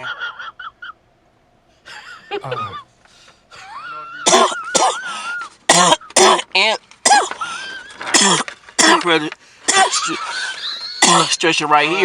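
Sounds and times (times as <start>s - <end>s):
man coughing with wheeze: 4.2s - 7.4s, 8.0s - 9.1s, 9.7s - 10.3s, 11.0s - 11.4s.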